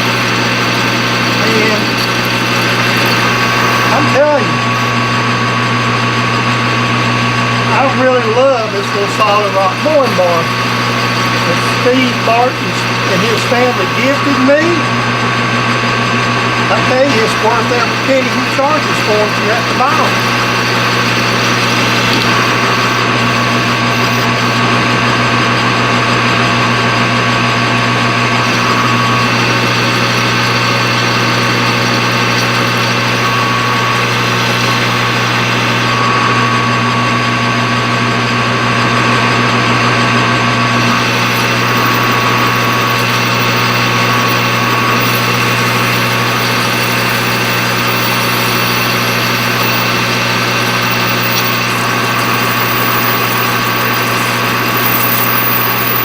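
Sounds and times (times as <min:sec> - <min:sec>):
metal lathe running: 0:00.0 - 0:56.0
faint high whine: 0:16.7 - 0:24.7, 0:40.7 - 0:56.0.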